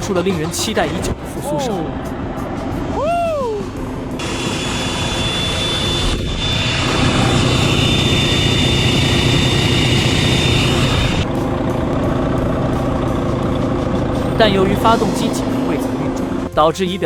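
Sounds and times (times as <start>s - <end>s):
truck diesel engine running: 3.7s - 16.6s
high steady whine: 3.8s - 16.6s.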